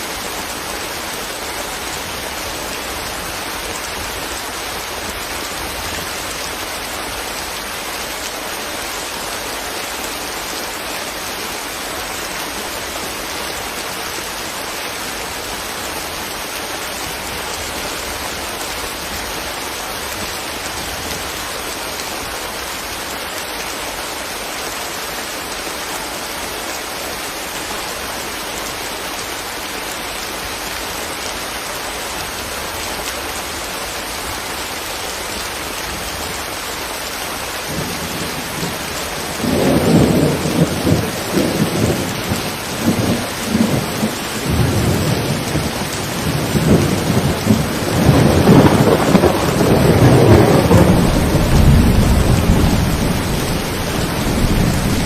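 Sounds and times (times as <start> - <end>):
rain hiss: 0.0 - 55.0
thunder rumbling: 37.8 - 55.0.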